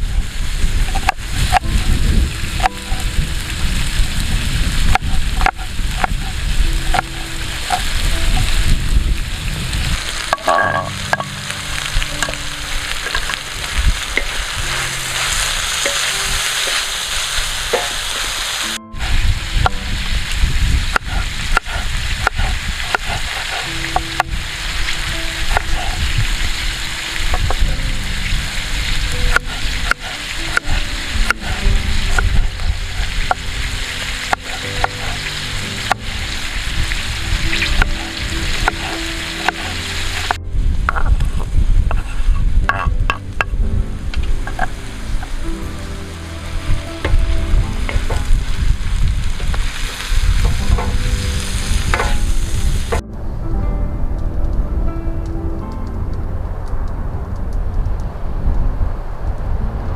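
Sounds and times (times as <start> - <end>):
meat and vegetables sizzling: 0.0 - 53.1
utensil scraping against metal: 14.2 - 19.1.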